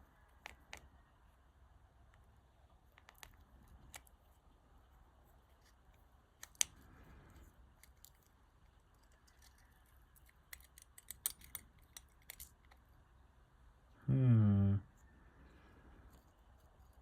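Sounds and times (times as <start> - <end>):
plastic and metal key parts clicking: 9.0 - 12.8.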